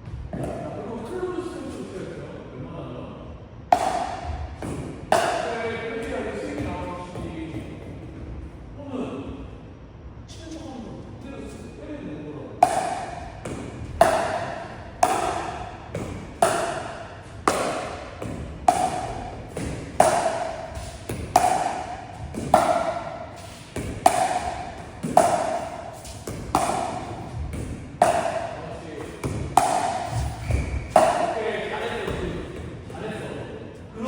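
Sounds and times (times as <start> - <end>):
paddle hitting plastic ball: 3.7 - 5.6, 12.6 - 31.4.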